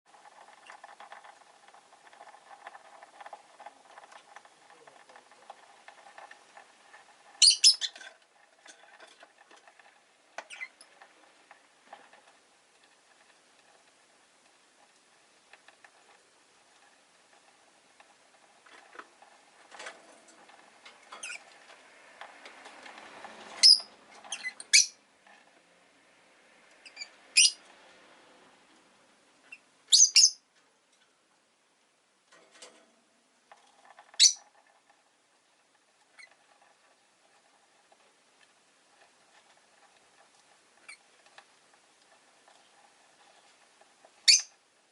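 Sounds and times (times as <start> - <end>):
soft scratching and rustling: 0.1 - 24.6, 32.3 - 44.9
lovebird chirping: 7.4 - 8.0, 23.6 - 25.0, 26.8 - 27.6, 29.5 - 30.4, 34.2 - 34.4, 44.2 - 44.5.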